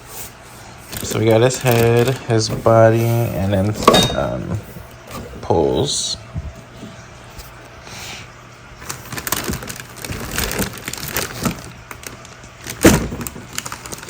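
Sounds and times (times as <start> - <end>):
plastic packaging crinkling: 0.8 - 5.4, 8.7 - 14.0.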